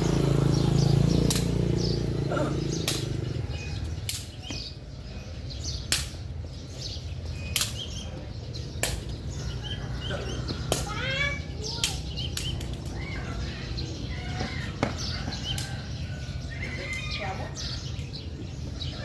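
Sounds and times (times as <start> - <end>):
small birds chirping: 0.0 - 19.0
sharp clicks: 1.3 - 1.6, 2.8 - 3.2, 11.8 - 12.9.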